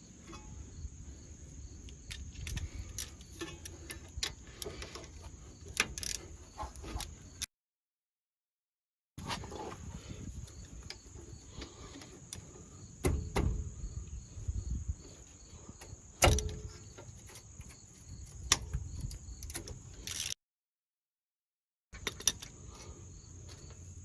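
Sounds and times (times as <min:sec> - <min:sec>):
crickets chirping: 0:00.0 - 0:07.5, 0:09.2 - 0:20.3, 0:22.0 - 0:24.0
metal tools clanking: 0:02.1 - 0:07.4.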